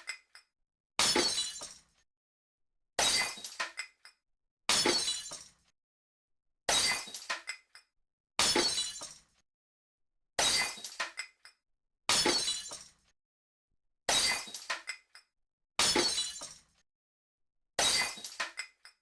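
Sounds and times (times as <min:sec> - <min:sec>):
glass smashing: 0:01.0 - 0:01.9, 0:03.0 - 0:03.8, 0:04.7 - 0:05.6, 0:06.7 - 0:07.4, 0:08.4 - 0:09.3, 0:10.4 - 0:11.3, 0:12.1 - 0:13.0, 0:14.1 - 0:14.9, 0:15.8 - 0:16.7, 0:17.8 - 0:18.7.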